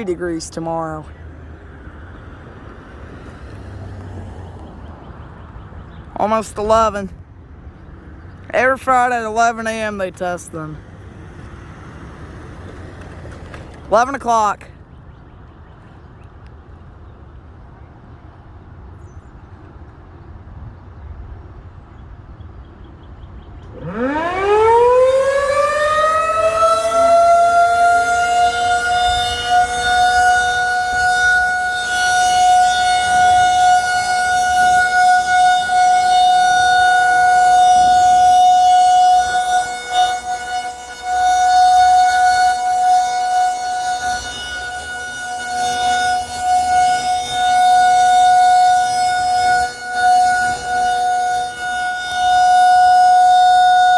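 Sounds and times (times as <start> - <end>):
warning siren winding up: 23.6 - 53.9.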